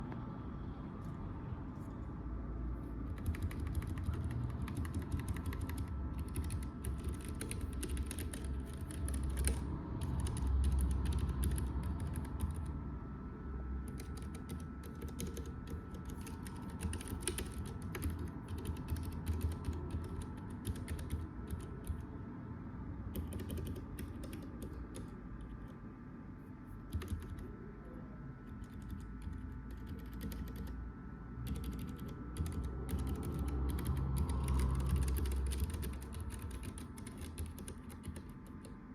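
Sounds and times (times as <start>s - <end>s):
steady low hum: 0.0s - 38.9s
mechanical keyboard typing: 3.0s - 12.7s, 13.8s - 22.0s, 23.1s - 25.7s, 26.9s - 27.5s, 28.6s - 30.8s, 31.4s - 38.8s.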